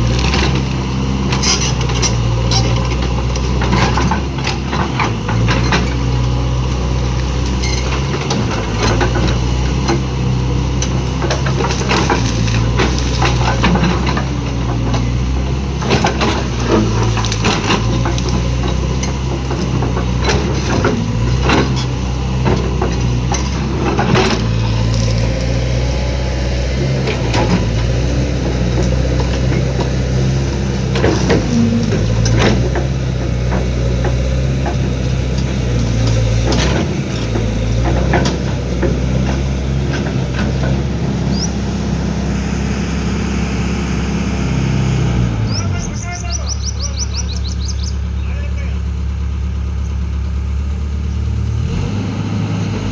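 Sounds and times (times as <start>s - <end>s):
diesel engine running under load: 0.0s - 52.9s
knocks and clanks: 7.6s - 25.6s, 26.7s - 41.5s.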